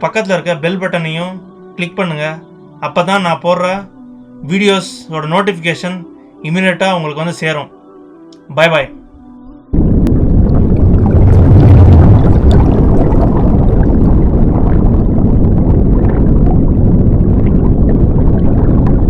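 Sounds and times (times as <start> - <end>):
loud low rumbling: 9.0 - 19.0.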